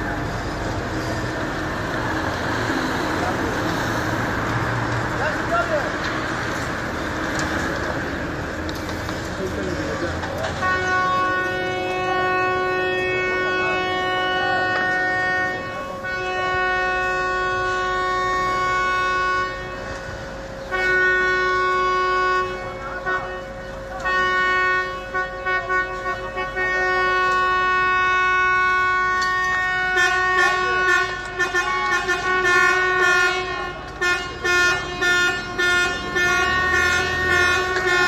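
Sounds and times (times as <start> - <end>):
vehicle horn blasts: 10.4 - 38.0.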